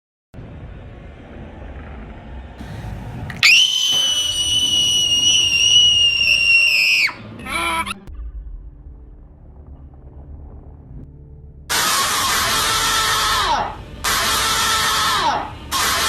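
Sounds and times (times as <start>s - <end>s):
low rumble: 0.4s - 14.1s
short falling cry: 2.6s - 8.0s
monster roar high screech: 3.4s - 7.9s, 11.7s - 16.0s.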